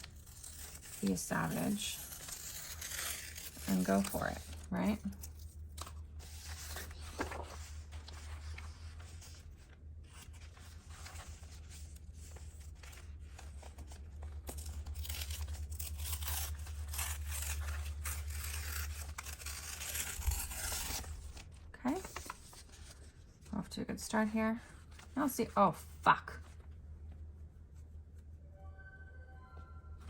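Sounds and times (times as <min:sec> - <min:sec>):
paper tearing slowly: 0:00.0 - 0:23.0.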